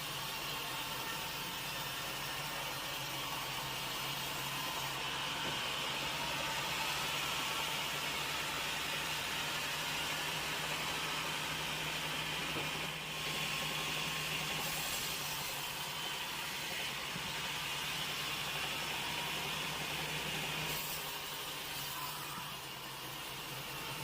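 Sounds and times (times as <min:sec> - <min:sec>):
sawmill machinery humming: 0:00.0 - 0:24.0.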